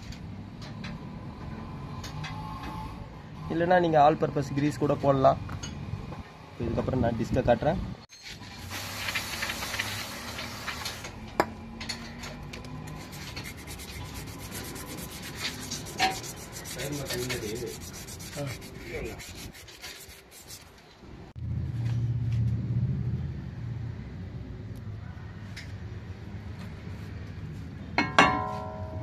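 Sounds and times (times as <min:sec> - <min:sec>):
rubbing and scraping brake parts: 0:08.1 - 0:21.2.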